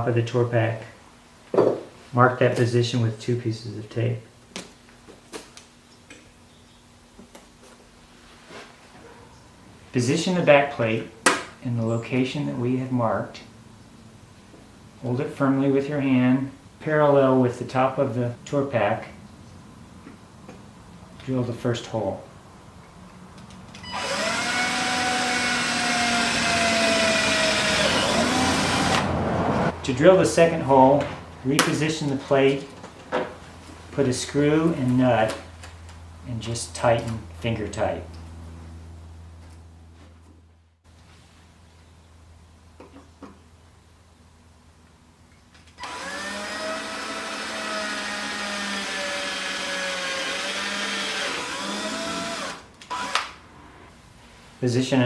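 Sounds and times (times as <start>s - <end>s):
electric drill boring: 23.9s - 29.0s, 45.8s - 53.3s.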